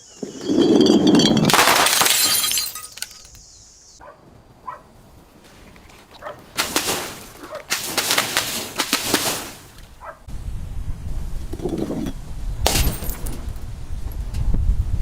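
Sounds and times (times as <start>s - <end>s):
glass smashing and crunching: 0.2s - 3.3s, 12.7s - 13.5s
wind rumble on microphone: 10.0s - 15.0s.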